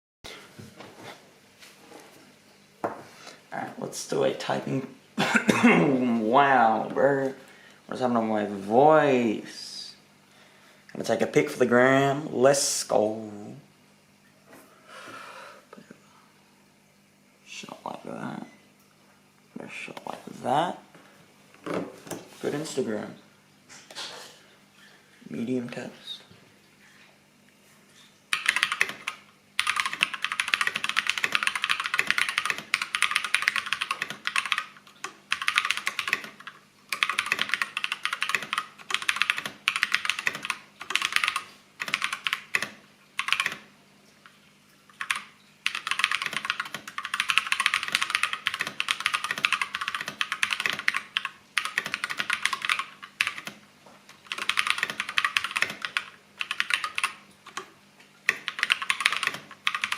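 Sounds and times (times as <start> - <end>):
mechanical keyboard typing: 28.3 - 43.7, 44.9 - 53.6, 54.2 - 59.9.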